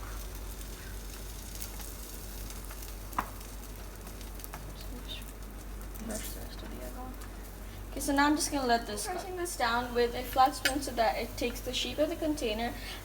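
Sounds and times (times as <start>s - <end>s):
oil and egg sizzling in a pan: 0.0s - 13.0s.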